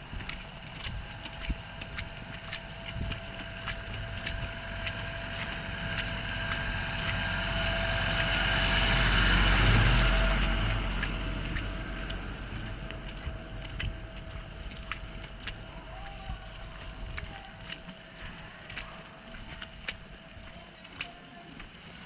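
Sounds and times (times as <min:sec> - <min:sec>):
vehicle passing: 0:03.5 - 0:14.2.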